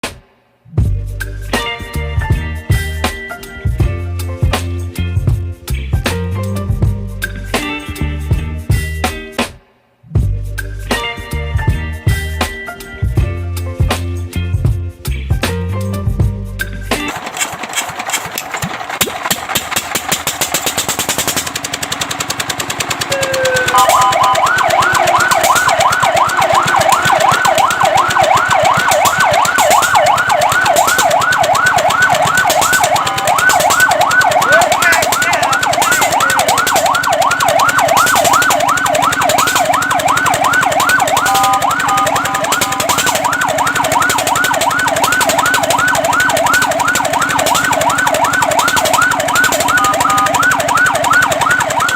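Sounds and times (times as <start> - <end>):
rapid even rattle: 17.0 - 23.8
fire truck siren yelping: 22.8 - 51.9.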